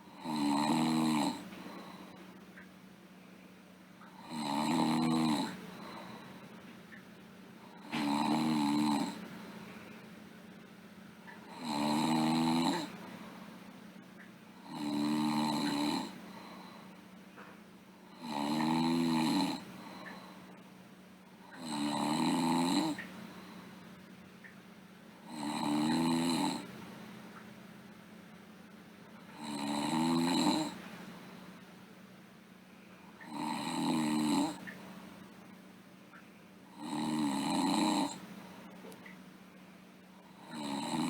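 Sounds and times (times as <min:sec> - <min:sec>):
girl snoring: 0:00.0 - 0:02.1, 0:04.2 - 0:06.2, 0:07.7 - 0:09.2, 0:11.4 - 0:13.1, 0:14.6 - 0:16.7, 0:18.1 - 0:20.3, 0:21.5 - 0:23.0, 0:25.2 - 0:26.7, 0:29.3 - 0:30.8, 0:33.2 - 0:34.6, 0:36.7 - 0:38.2, 0:40.2 - 0:41.0
quiet breathing: 0:00.0 - 0:24.3, 0:29.0 - 0:31.9, 0:32.6 - 0:35.6, 0:36.2 - 0:41.0.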